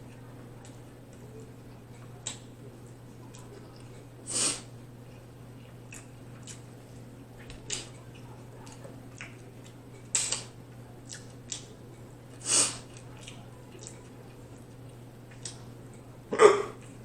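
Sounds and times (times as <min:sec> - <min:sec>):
steady low hum: 0:00.0 - 0:17.0
wet chewing clicks and smacks: 0:02.2 - 0:02.5, 0:05.0 - 0:06.7, 0:07.4 - 0:11.7, 0:12.9 - 0:15.6.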